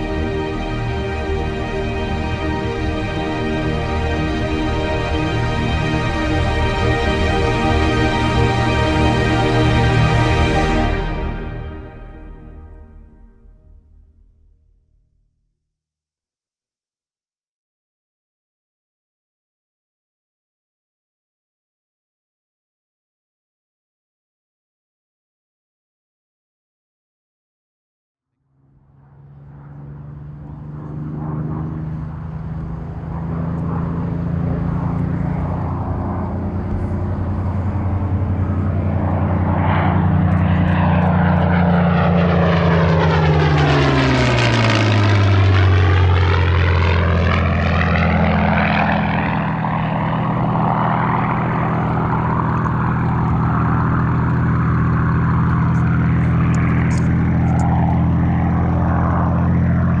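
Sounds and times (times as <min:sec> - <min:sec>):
propeller aircraft flying past: 0:00.0 - 0:14.8, 0:28.5 - 1:00.0.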